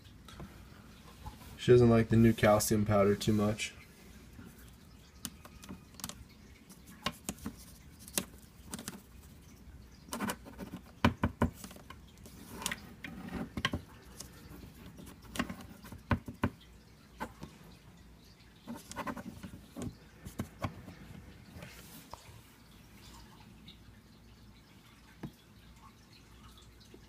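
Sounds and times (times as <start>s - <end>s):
light clicks and taps: 5.2s - 9.2s.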